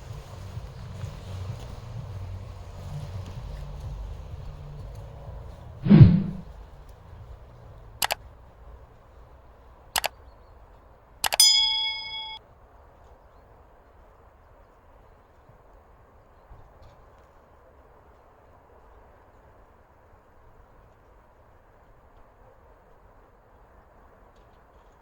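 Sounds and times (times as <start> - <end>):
sharp metallic clicks: 11.2 - 12.4.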